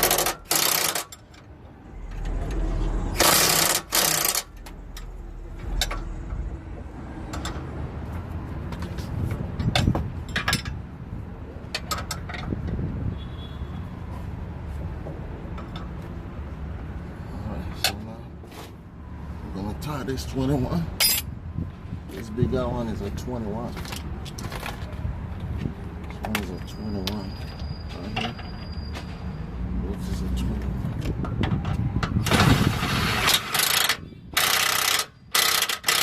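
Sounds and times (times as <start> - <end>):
hand tools and sockets clinking: 0.0 - 2.6, 3.2 - 6.1, 8.7 - 10.8, 21.0 - 21.3, 33.2 - 36.0.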